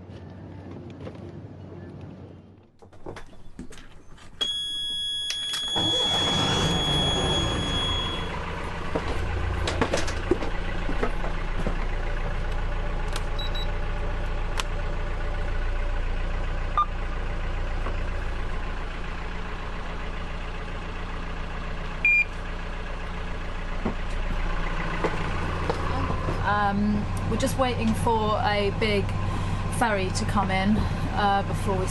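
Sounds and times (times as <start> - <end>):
short electronic beep: 4.4 - 8.3
boat engine idling: 5.7 - 31.9.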